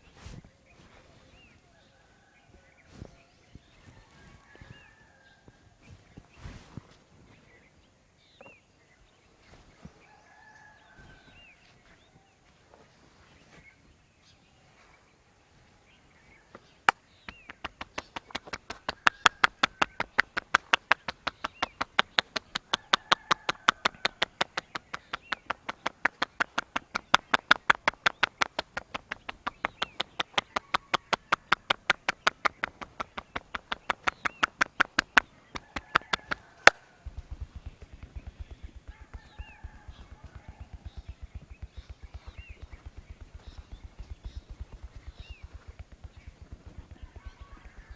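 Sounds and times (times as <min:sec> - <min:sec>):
rhythmic hand slaps on head: 0:16.9 - 0:47.9.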